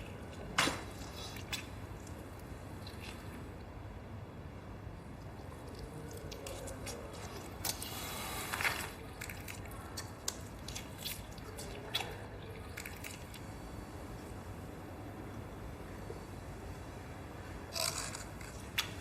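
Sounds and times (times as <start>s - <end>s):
person chewing: 5.2s - 13.6s.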